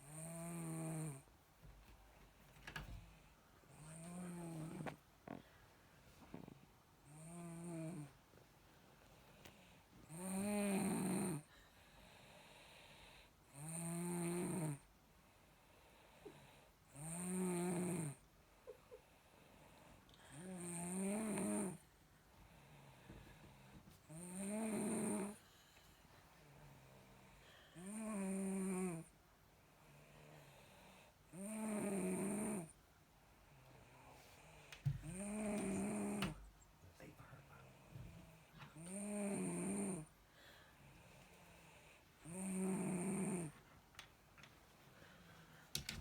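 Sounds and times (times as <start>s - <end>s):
buzzing snores: 0.0s - 1.3s, 3.7s - 5.4s, 6.4s - 8.2s, 10.1s - 11.5s, 12.1s - 14.9s, 16.0s - 18.3s, 20.3s - 21.8s, 24.1s - 25.4s, 27.7s - 29.1s, 29.9s - 32.8s, 35.0s - 36.4s, 38.8s - 40.1s, 41.6s - 43.6s
person snoring: 10.1s - 11.5s, 20.3s - 21.8s, 24.1s - 25.4s, 35.0s - 36.4s, 38.8s - 40.1s, 42.2s - 43.6s
faint breathing: 25.3s - 27.9s, 40.2s - 42.3s, 44.7s - 46.0s.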